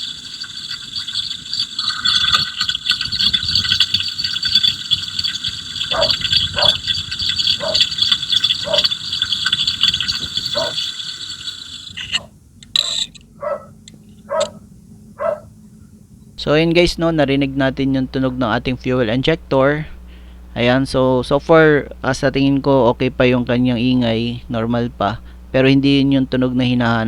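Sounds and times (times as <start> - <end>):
dog barking: 5.9 - 6.8, 7.6 - 8.0, 8.6 - 8.9, 10.5 - 10.9, 13.4 - 14.6, 15.2 - 15.6.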